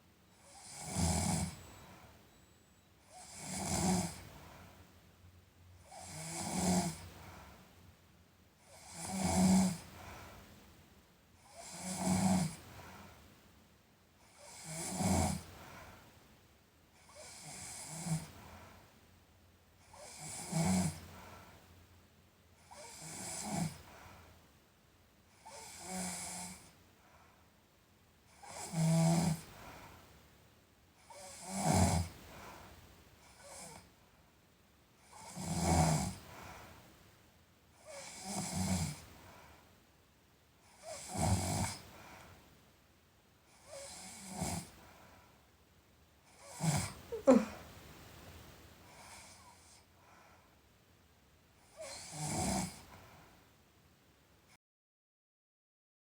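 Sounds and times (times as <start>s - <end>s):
person snoring: 46.4s - 47.6s.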